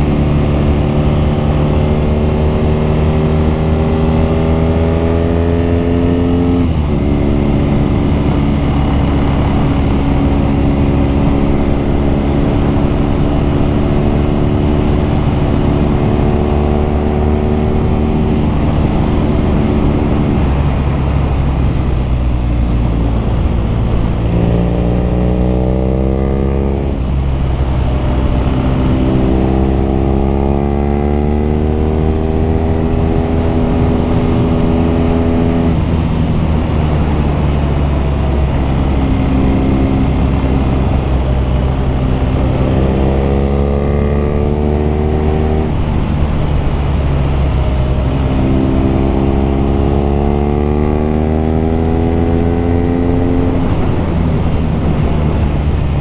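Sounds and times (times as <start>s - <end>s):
motorcycle engine accelerating: 0.0s - 56.0s
wind rumble on microphone: 0.0s - 56.0s.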